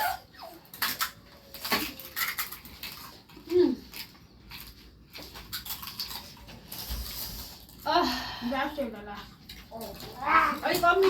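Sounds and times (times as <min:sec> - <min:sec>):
crisp shells crunching: 0:00.2 - 0:07.9.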